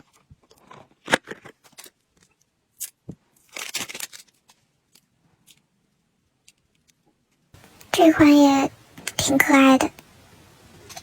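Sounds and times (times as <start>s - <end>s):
crinkly rustling: 3.3s - 5.7s.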